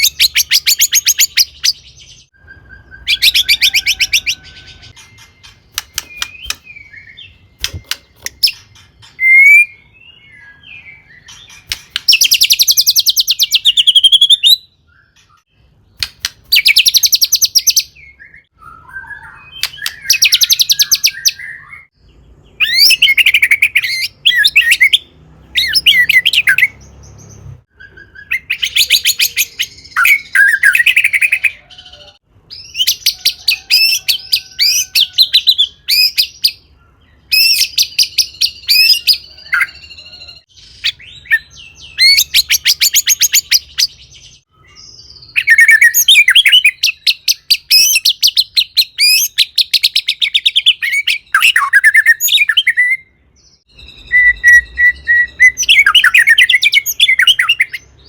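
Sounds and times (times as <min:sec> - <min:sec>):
songbird whistling and rattling: 0:00.0 - 0:15.4, 0:16.0 - 0:21.9, 0:37.3 - 0:44.0, 0:45.2 - 0:53.0.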